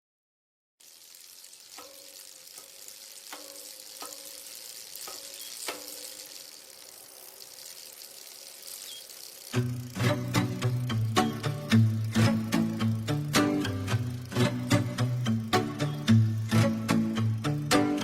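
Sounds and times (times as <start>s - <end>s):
steady hiss: 0.8s - 18.0s
quiet plucked notes: 9.5s - 18.0s.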